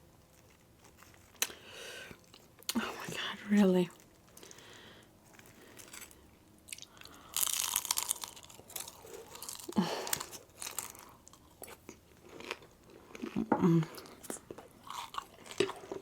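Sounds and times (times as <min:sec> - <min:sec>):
crunching bites and chewing: 0:04.0 - 0:16.0.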